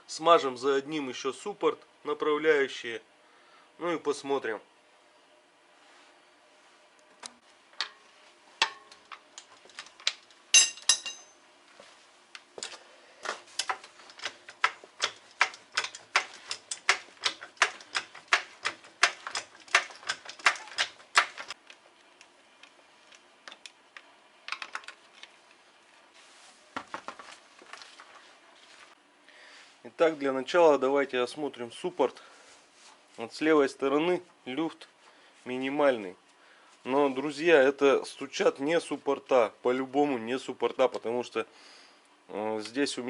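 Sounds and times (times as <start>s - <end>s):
metal clinks: 10.5s - 11.4s
metal clatter: 10.6s - 11.3s.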